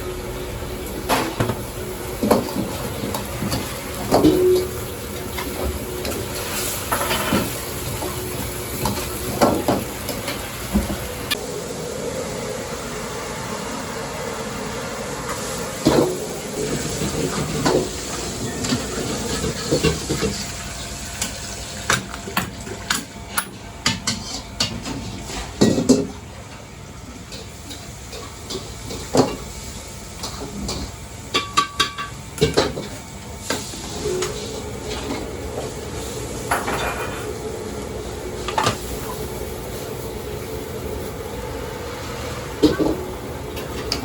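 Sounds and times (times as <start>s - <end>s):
kitchen background hiss: 0.0s - 44.0s.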